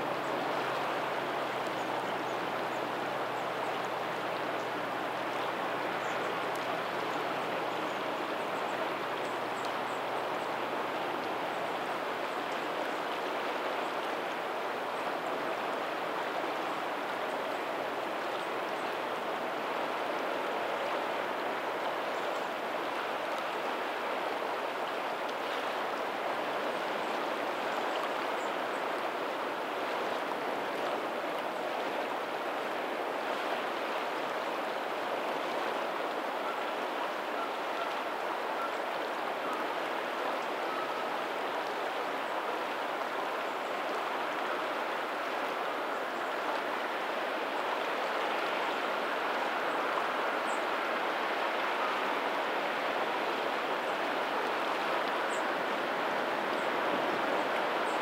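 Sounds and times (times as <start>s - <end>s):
faint ocean waves: 0.0s - 58.0s
rush of flowing water: 0.0s - 58.0s.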